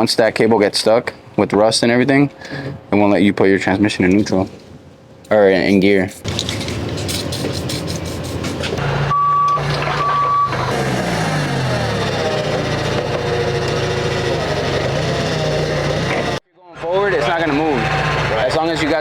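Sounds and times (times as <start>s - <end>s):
forklift engine running: 6.3s - 19.0s
reverse alarm beeping: 8.8s - 12.5s.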